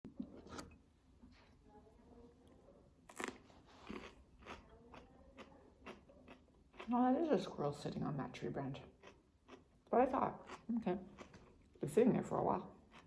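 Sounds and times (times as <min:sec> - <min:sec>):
crisp crunches of chewing pepper: 0:03.1 - 0:06.9.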